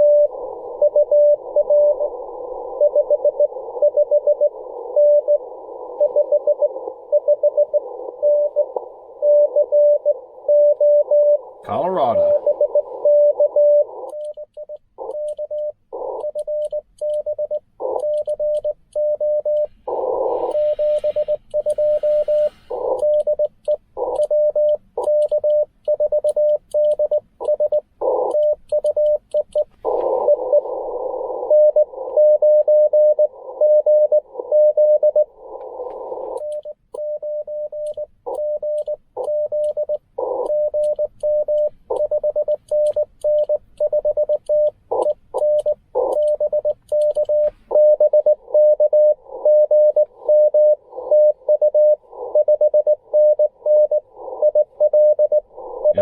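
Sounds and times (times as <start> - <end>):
morse code tone: 8.3 - 30.8.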